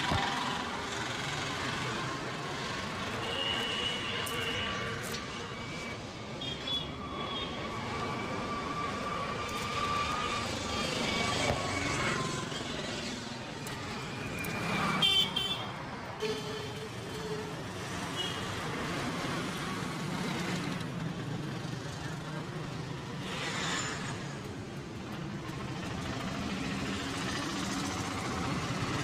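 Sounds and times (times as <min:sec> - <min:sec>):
street traffic noise: 0:00.0 - 0:29.0
vehicle horns: 0:03.2 - 0:05.1.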